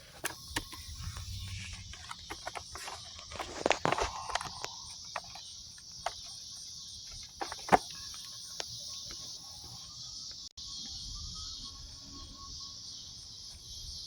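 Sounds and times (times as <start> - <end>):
crickets chirring: 0.0 - 14.0.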